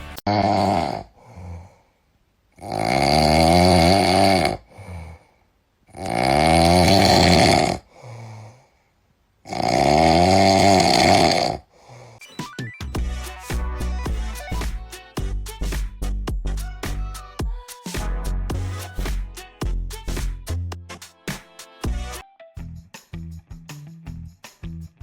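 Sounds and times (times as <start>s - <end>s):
music: 0.0s - 0.2s, 12.3s - 25.0s
pet snoring loudly: 0.3s - 1.1s, 2.6s - 5.0s, 5.9s - 7.9s, 9.5s - 11.7s
quiet breaths: 0.7s - 2.7s, 4.4s - 6.0s, 7.8s - 9.5s, 11.5s - 12.2s.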